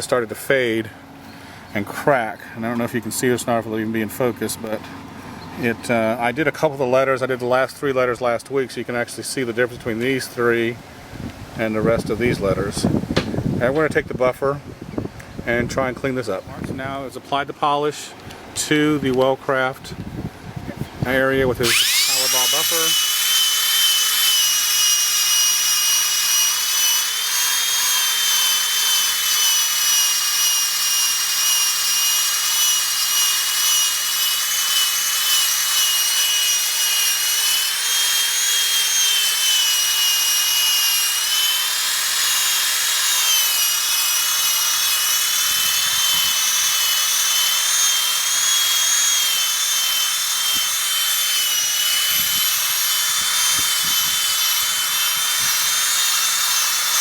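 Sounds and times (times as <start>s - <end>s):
electric drill motor whine: 21.6s - 57.0s.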